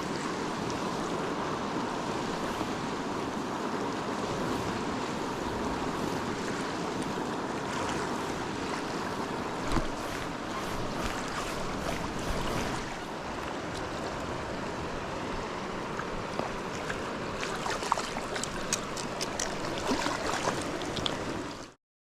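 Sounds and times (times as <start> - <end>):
river water running: 0.0 - 21.8
small splashes and ticks: 16.0 - 21.8.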